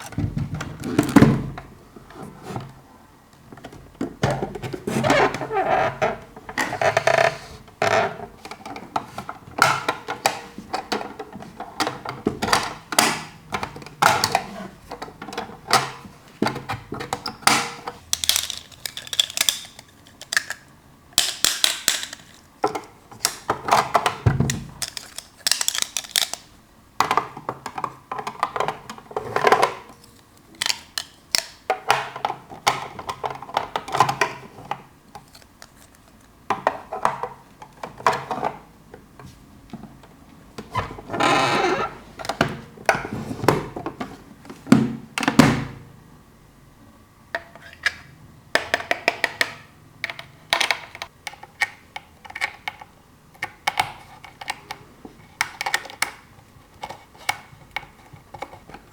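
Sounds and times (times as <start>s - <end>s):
plastic toy parts clicking: 17.1s - 26.5s, 29.6s - 34.3s, 35.2s - 36.3s, 48.6s - 54.8s
packaging rustling: 18.0s - 22.6s, 24.5s - 26.5s, 35.2s - 36.4s.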